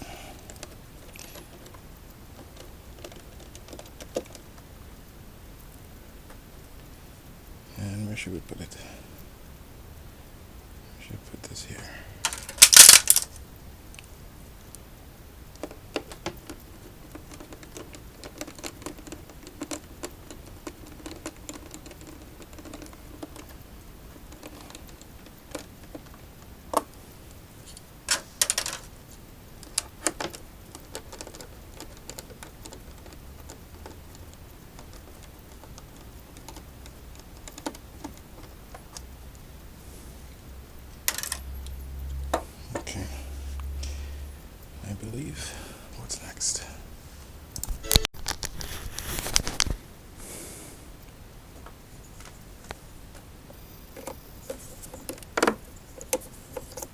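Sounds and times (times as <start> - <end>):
clicks of small parts and tools: 12.2 - 13.3, 28.1 - 28.9, 41.1 - 41.5.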